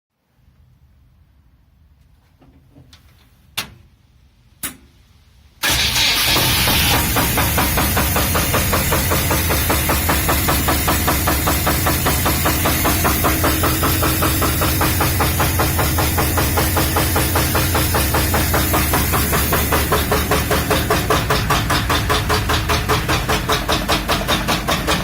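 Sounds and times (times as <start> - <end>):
car engine knocking: 5.6 - 25.0.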